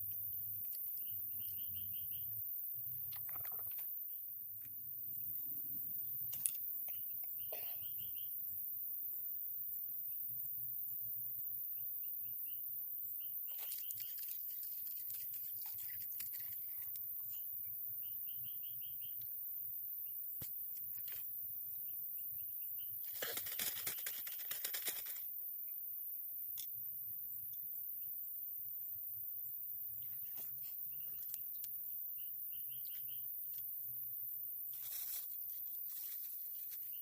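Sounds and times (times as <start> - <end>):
rustling or scraping: 34.7 - 37.0.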